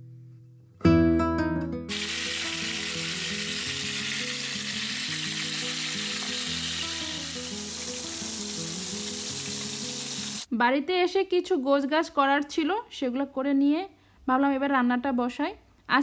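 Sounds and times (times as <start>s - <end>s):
food sizzling in hot oil: 1.9s - 10.5s.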